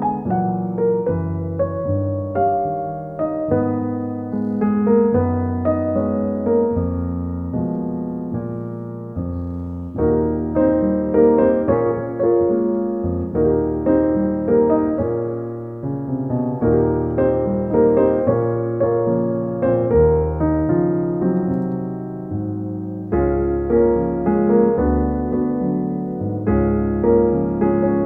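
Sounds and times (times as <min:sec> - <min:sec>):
piano music: 0:00.0 - 0:28.0.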